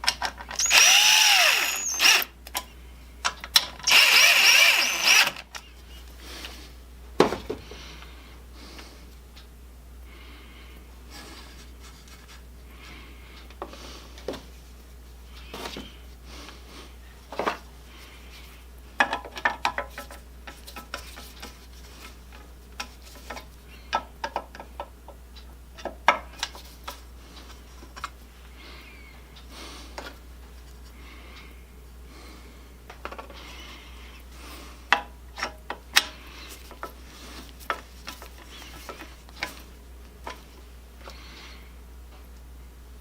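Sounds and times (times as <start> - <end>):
parts clicking and scraping: 0.0 - 5.7.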